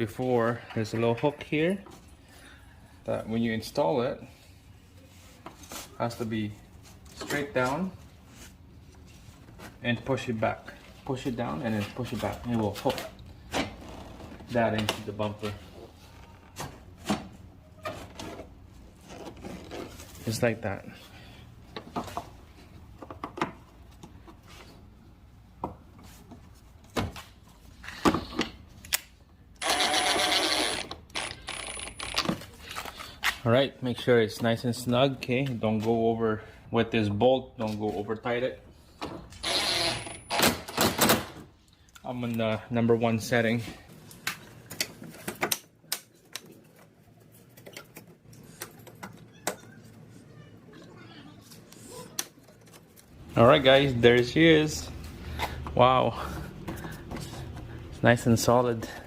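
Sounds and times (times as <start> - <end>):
tool and parts clicking: 28.8 - 32.5
cordless drill motor whine: 29.6 - 32.3, 39.4 - 40.7.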